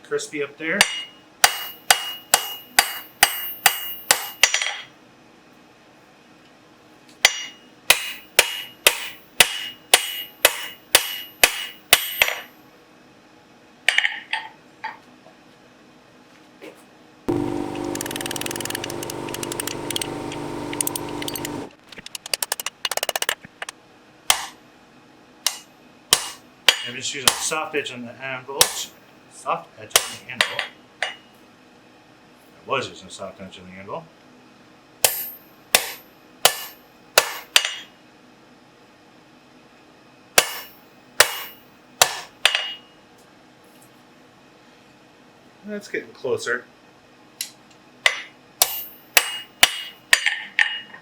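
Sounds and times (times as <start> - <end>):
hammer ringing on anvil: 0.8 - 4.5, 7.3 - 12.5, 35.0 - 37.8, 40.4 - 42.9, 48.6 - 50.0
mechanical noise with hum: 14.6 - 51.0.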